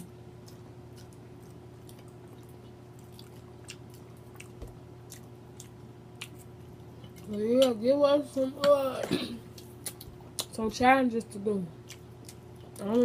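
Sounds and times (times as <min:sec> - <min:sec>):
faint steady hum: 0:00.0 - 0:13.0
chewing and mouth smacking: 0:00.4 - 0:07.8, 0:09.5 - 0:10.6, 0:11.8 - 0:13.0.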